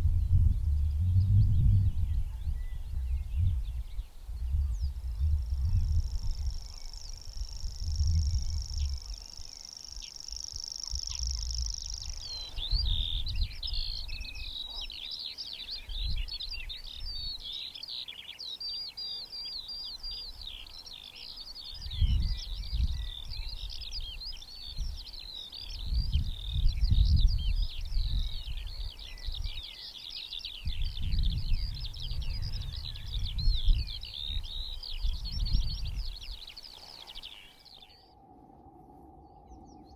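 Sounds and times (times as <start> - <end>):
wind rumble: 0.0 - 9.6, 10.8 - 14.6, 21.8 - 29.6, 30.6 - 36.6, 37.9 - 39.9
songbird chattering song: 0.0 - 38.2.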